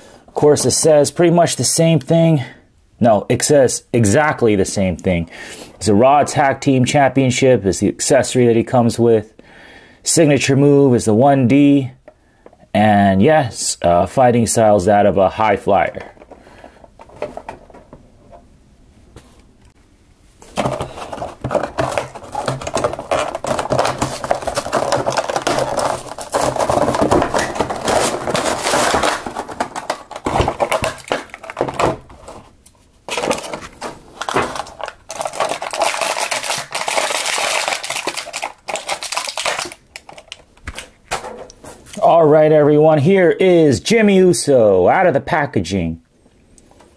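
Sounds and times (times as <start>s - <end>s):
plastic and cardboard crinkling: 15.7s - 18.4s, 20.4s - 42.0s.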